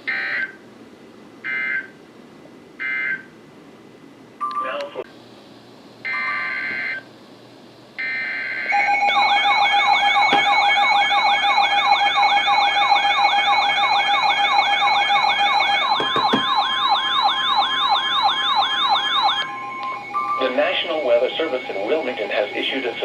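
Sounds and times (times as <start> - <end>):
siren-like alert warble: 6.1 - 7.0, 8.0 - 23.0.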